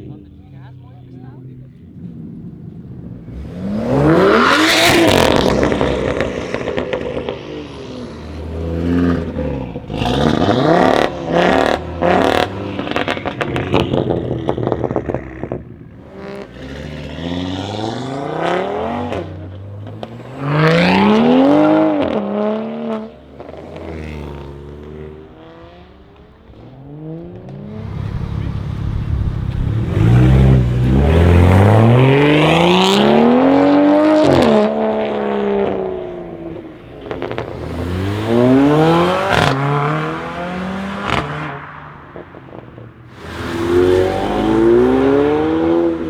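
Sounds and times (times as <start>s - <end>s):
car engine revving hard: 2.2s - 46.0s
exhaust crackles and pops: 27.3s - 32.2s.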